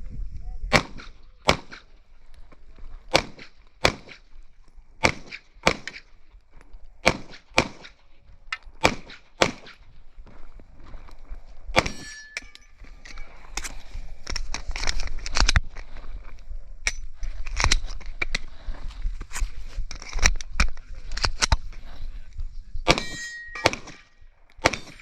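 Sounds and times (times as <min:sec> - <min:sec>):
airsoft pistol shots: 0:00.7 - 0:01.9, 0:03.1 - 0:04.2, 0:05.0 - 0:06.0, 0:07.0 - 0:08.0, 0:08.8 - 0:09.8, 0:22.9 - 0:24.0, 0:24.6 - 0:25.0.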